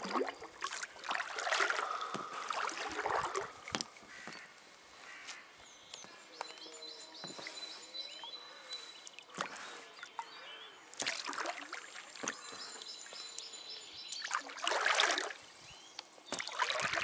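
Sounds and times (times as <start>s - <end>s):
paddle strokes splashing water: 0.0s - 4.3s, 9.0s - 13.2s, 14.1s - 15.4s, 16.3s - 17.0s
birds singing: 0.0s - 17.0s.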